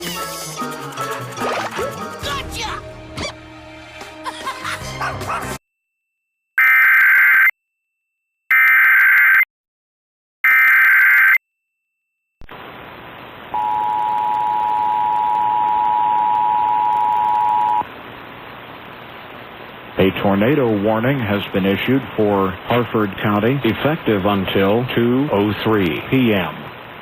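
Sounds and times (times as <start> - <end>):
low hiss: 12.5 - 27.0
two-tone attention signal: 13.6 - 17.8.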